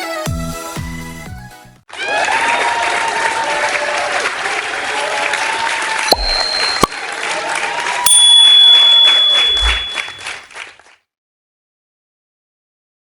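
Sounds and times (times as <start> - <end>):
applause: 1.9 - 8.0, 10.2 - 11.0
people cheering: 1.9 - 10.3
bell dings: 6.1 - 7.0, 8.1 - 10.4.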